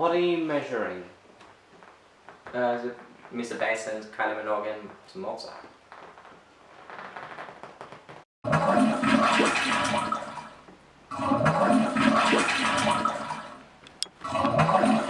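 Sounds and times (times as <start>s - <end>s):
toilet flushing: 8.5s - 13.6s, 14.2s - 15.0s.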